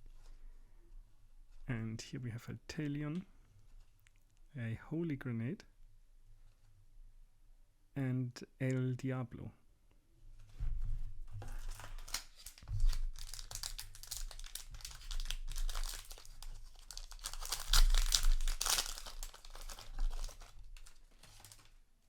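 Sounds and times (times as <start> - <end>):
wrapper crinkling and tearing: 11.6 - 21.8.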